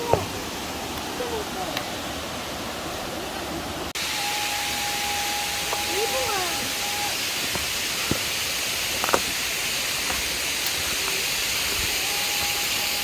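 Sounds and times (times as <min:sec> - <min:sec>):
stream water rushing: 0:00.0 - 0:13.0.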